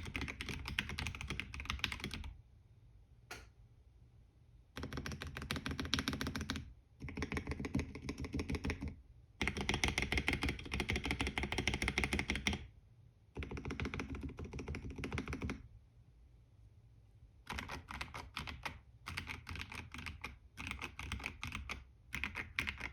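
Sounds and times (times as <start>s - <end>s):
mechanical keyboard typing: 0.0s - 2.4s, 4.8s - 12.7s, 13.4s - 15.6s, 17.5s - 22.9s.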